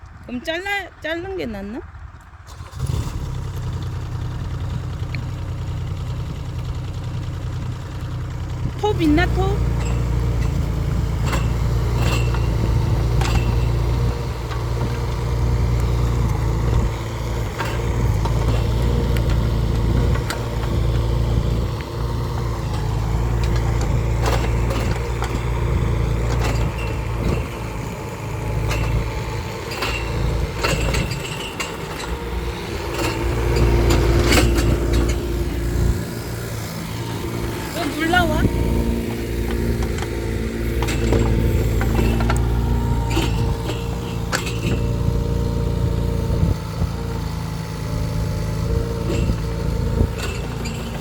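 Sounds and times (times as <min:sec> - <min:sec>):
excavator engine running: 0:00.0 - 0:51.0
sharp clanks and knocks: 0:05.0 - 0:51.0.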